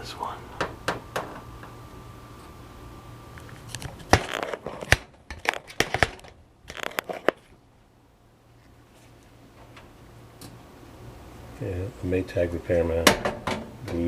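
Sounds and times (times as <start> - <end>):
plastic clicks and crinkling: 3.4 - 7.5.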